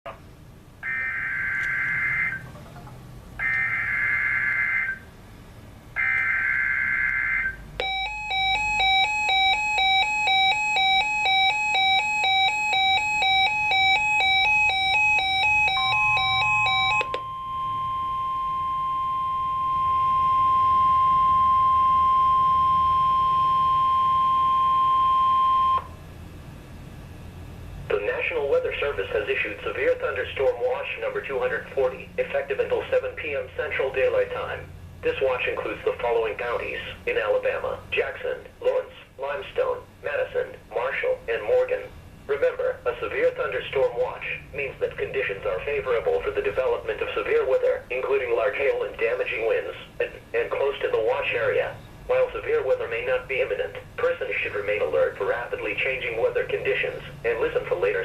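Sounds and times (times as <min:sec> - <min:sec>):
pulsing alarm beeps: 0:00.8 - 0:02.5, 0:03.4 - 0:05.1, 0:06.0 - 0:26.0
steady warning tone: 0:00.8 - 0:26.0.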